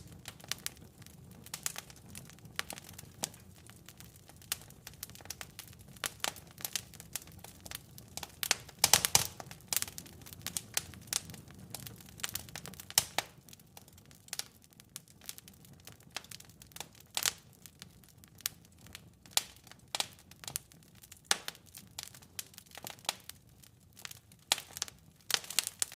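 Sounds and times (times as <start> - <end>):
faint hiss of flame: 0.0 - 15.5
wood fire crackling: 0.0 - 26.0.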